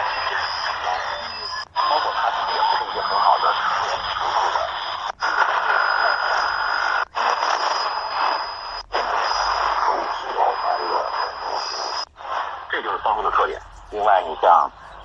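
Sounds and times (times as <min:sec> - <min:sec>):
radio static: 0:00.0 - 0:15.0
steady high whistle: 0:07.6 - 0:12.1.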